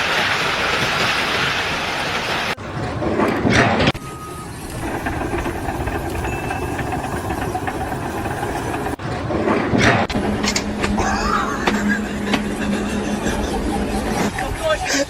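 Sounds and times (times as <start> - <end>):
loud noise: 3.1 - 14.4
engine low rumble: 3.9 - 14.6.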